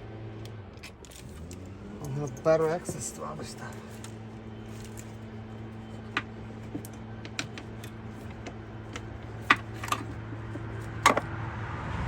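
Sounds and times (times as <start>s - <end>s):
tools clicking and knocking: 5.9s - 11.3s.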